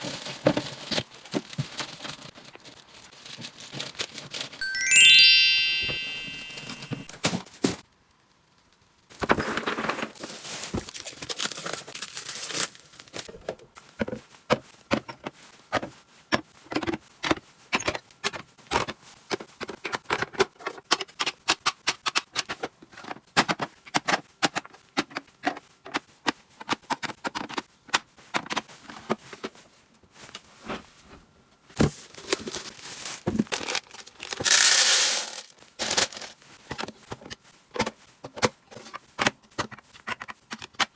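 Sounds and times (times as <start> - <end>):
plastic packaging crinkling: 10.1 - 13.3, 32.1 - 36.5.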